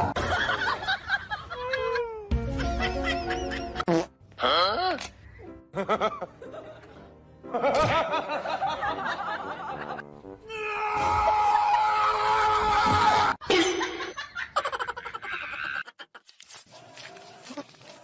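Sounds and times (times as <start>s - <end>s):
people laughing: 0.0s - 3.8s, 5.7s - 10.1s, 13.4s - 16.3s
music: 2.3s - 11.3s.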